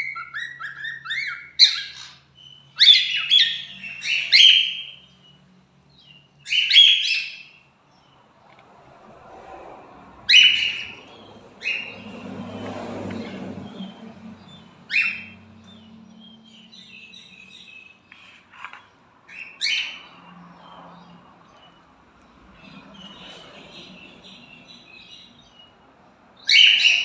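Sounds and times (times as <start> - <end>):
cockatiels calling: 0.0 - 5.2, 6.0 - 7.6, 10.3 - 20.1, 26.4 - 27.0
soft bird chirps: 10.3 - 27.0.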